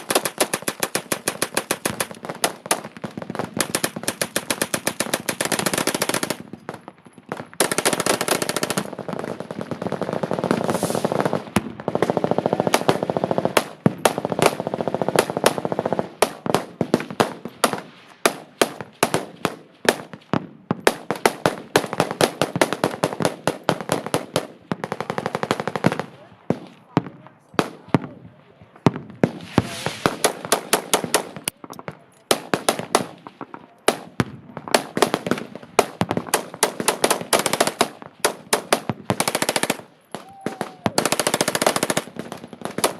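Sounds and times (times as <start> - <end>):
machine guns firing: 0.0 - 20.2, 20.8 - 28.1, 28.9 - 42.9.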